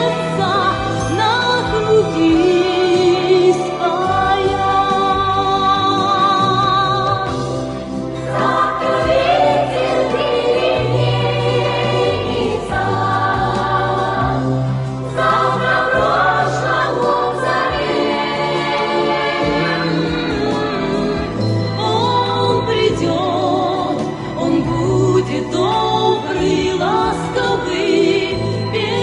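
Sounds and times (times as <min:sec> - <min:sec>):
choir singing held notes: 0:07.2 - 0:24.7.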